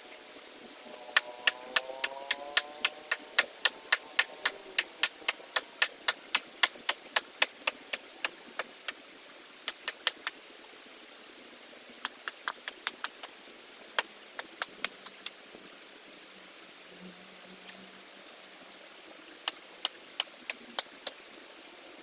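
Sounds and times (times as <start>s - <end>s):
sharp dry clicks: 1.2s - 9.0s, 9.7s - 10.4s, 12.0s - 13.3s, 14.0s - 15.4s, 19.5s - 21.2s.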